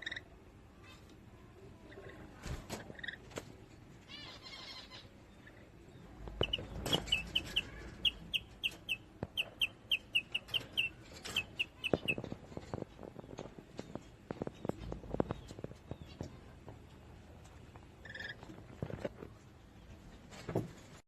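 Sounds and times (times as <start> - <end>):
parrot chirping: 6.4 - 12.2.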